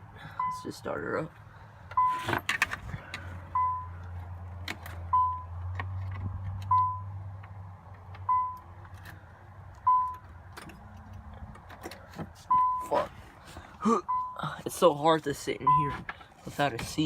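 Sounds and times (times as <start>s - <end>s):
car warning chime: 0.3s - 0.8s, 1.9s - 2.4s, 3.5s - 4.0s, 5.1s - 5.5s, 6.7s - 7.1s, 8.2s - 8.7s, 9.8s - 10.2s, 12.5s - 13.0s, 13.9s - 14.8s, 15.5s - 16.1s.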